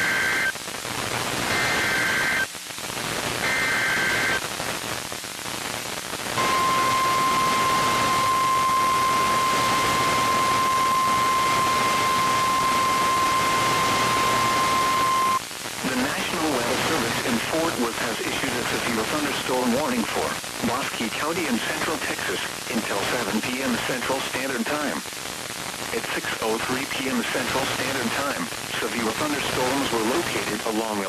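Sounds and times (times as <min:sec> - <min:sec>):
steady single-pitch alarm tone: 0:00.0 - 0:00.5, 0:01.5 - 0:02.5, 0:03.4 - 0:04.4, 0:06.4 - 0:15.4
digital data bursts: 0:00.0 - 0:00.6, 0:01.3 - 0:02.5, 0:03.1 - 0:04.5, 0:06.4 - 0:19.9
radio static: 0:00.0 - 0:31.0.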